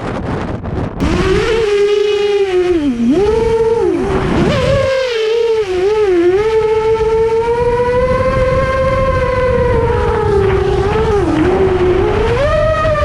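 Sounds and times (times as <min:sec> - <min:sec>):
low wind rumble: 0:00.0 - 0:13.0
drone motors whining: 0:01.0 - 0:13.0.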